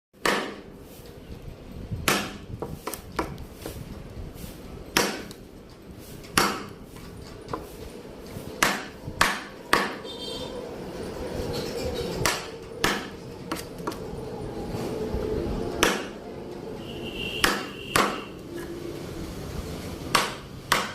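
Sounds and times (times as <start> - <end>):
hand tools knocking on wood: 17.4 - 18.2.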